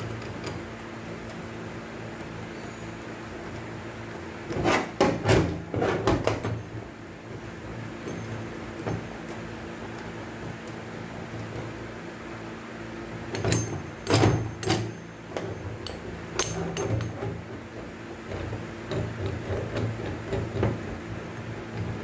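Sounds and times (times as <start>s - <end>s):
steady low hum: 0.0s - 22.0s
metallic clanks of hand tools: 13.3s - 17.4s.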